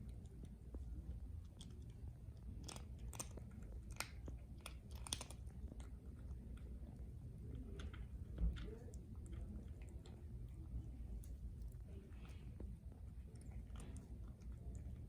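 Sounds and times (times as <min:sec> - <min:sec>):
cat chewing and crunching food: 0:00.0 - 0:15.0.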